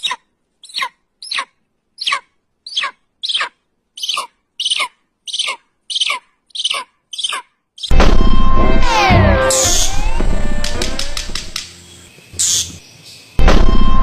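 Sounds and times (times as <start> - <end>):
bird screeching shrilly: 0.0 - 7.9, 9.0 - 10.1.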